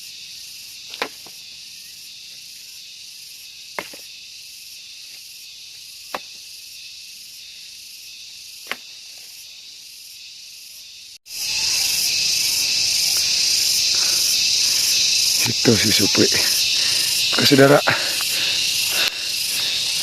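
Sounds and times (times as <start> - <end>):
insects chirring: 0.0 - 20.0
sharp snaps: 18.2 - 19.2.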